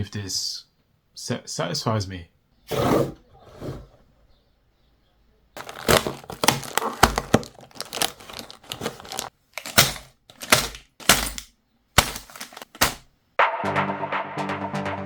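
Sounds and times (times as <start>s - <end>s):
packaging crinkling and tearing: 5.6s - 11.4s, 12.0s - 13.0s
small thunks: 5.6s - 13.1s.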